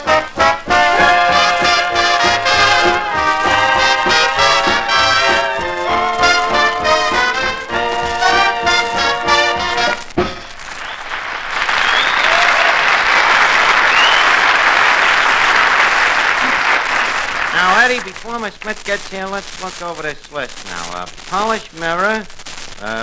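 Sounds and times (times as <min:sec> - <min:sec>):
audience applauding: 0:00.0 - 0:19.0
swing band with brass: 0:00.0 - 0:19.8.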